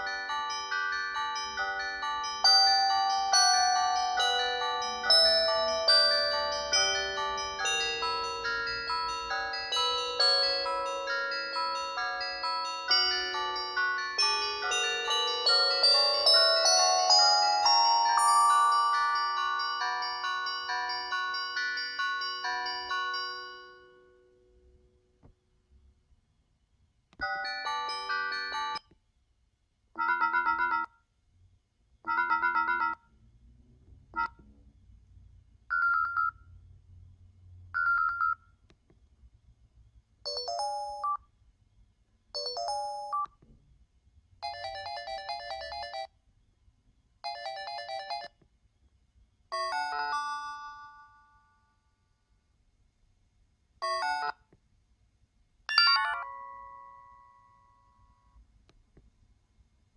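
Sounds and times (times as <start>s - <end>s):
phone ringtones: 30.0s - 30.9s, 32.1s - 33.0s, 35.7s - 36.4s, 37.8s - 38.4s, 40.3s - 41.3s, 42.4s - 43.4s, 44.4s - 46.1s, 47.2s - 48.3s, 55.7s - 57.1s.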